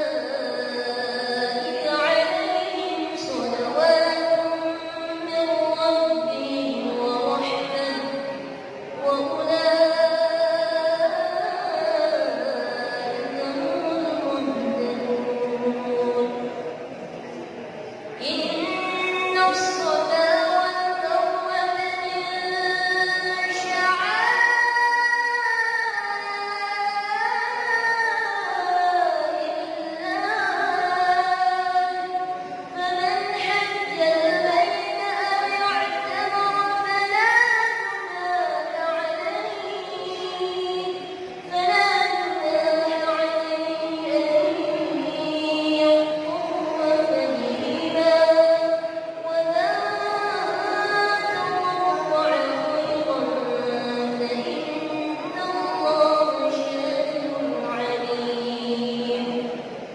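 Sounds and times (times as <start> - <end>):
person reciting in melodic chant: 0.0 - 59.9.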